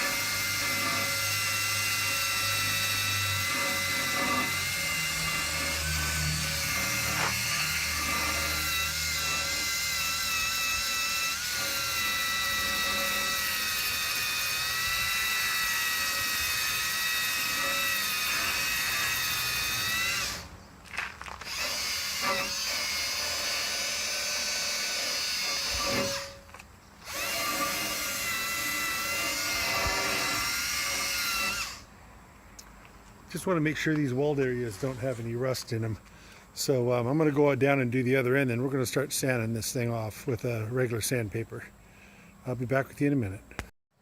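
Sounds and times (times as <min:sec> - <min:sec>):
power tool abrading steel: 0:00.0 - 0:20.5, 0:21.3 - 0:31.9.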